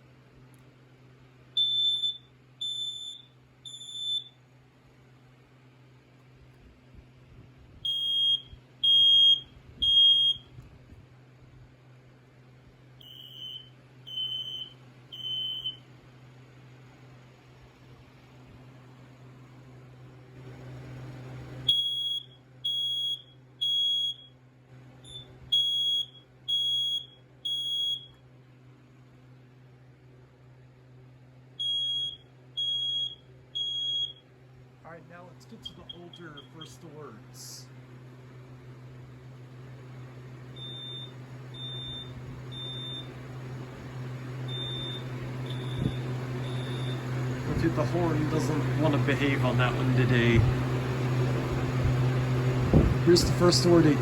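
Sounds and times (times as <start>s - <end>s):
smoke alarm beeps: 1.6s - 4.4s, 7.8s - 10.5s, 13.0s - 15.9s, 21.7s - 24.4s, 25.0s - 28.2s, 31.6s - 34.3s, 35.4s - 37.1s, 40.5s - 43.2s, 44.4s - 48.9s.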